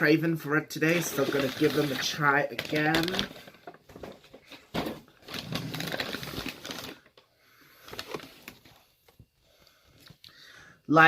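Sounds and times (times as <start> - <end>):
food packaging rustling: 0.9 - 9.2.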